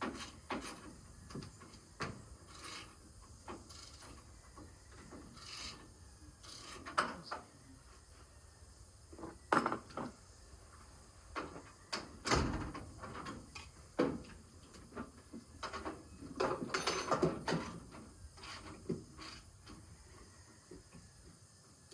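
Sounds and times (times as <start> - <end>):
metal tools knocking and scraping: 15.6 - 19.4.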